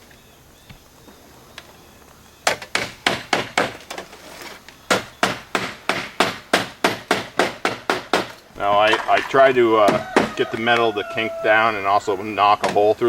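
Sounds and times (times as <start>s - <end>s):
hammer striking nail into metal: 4.9s - 8.4s.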